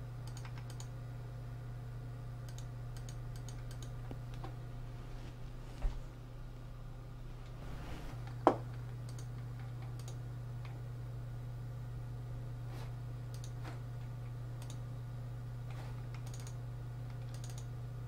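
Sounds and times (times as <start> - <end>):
steady low hum: 0.0 - 18.0
sharp clicks: 2.5 - 4.4, 16.1 - 17.7.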